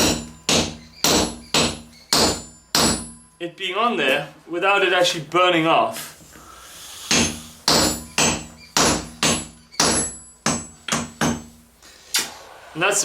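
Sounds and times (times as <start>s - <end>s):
hammer striking steel on anvil: 0.0s - 3.2s, 7.1s - 11.5s.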